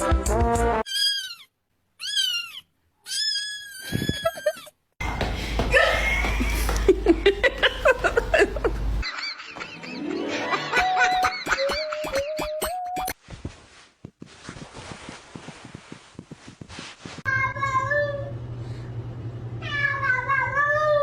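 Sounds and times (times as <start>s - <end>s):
cat meowing: 0.9s - 4.6s
steady low hum: 5.0s - 9.0s.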